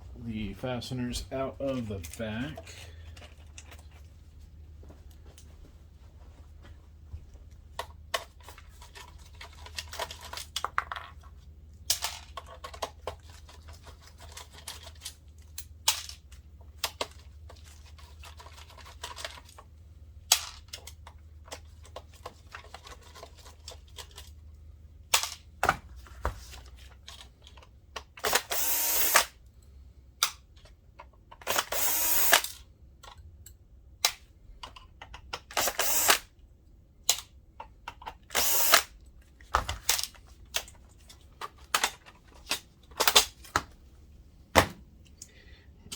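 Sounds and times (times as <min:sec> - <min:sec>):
tools and screws clicking: 0:27.0 - 0:29.3, 0:30.2 - 0:36.3, 0:37.0 - 0:39.0
electric screwdriver whirring: 0:28.2 - 0:29.4, 0:31.4 - 0:32.6, 0:35.5 - 0:36.3, 0:38.3 - 0:38.9.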